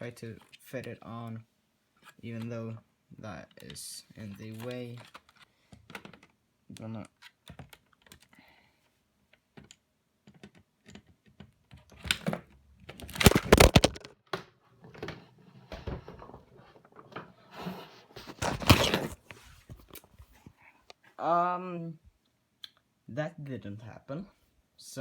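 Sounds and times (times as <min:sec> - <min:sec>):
plastic parts clicking and scraping: 0:03.5 - 0:08.4, 0:09.3 - 0:17.4, 0:18.2 - 0:21.0
plastic parts rattling: 0:10.3 - 0:14.1.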